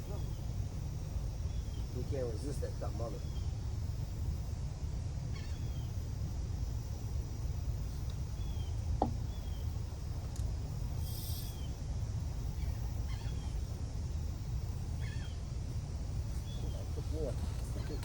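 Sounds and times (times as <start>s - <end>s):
bird chirps: 11.0s - 11.8s.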